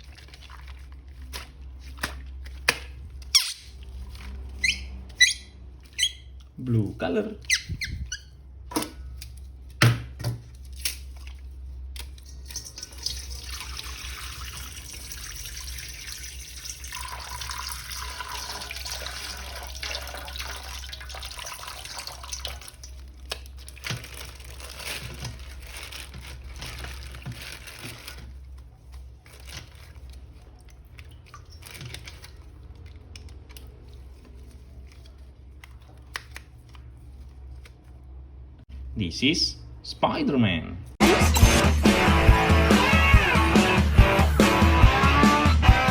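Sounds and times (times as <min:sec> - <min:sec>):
tap water running and splashing: 0:12.0 - 0:27.7.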